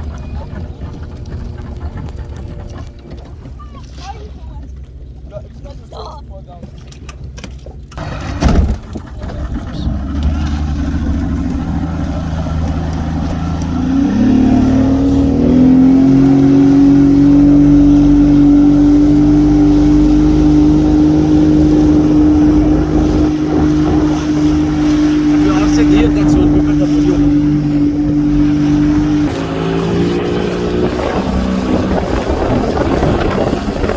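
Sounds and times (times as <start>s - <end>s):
motorboat engine: 0.0s - 33.9s
loud thump: 8.4s - 8.9s.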